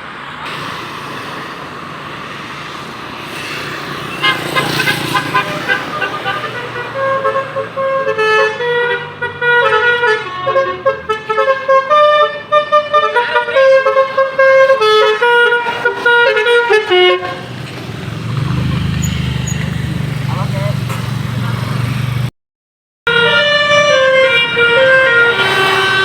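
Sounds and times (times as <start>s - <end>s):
musical air horn playing a tune: 3.3s - 17.4s, 23.1s - 26.0s.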